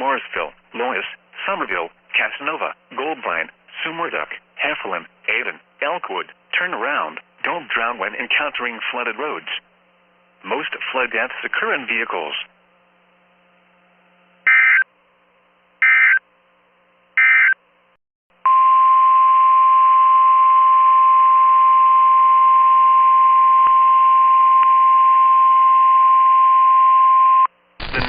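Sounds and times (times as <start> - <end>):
warbling data bursts: 27.8 - 28.0.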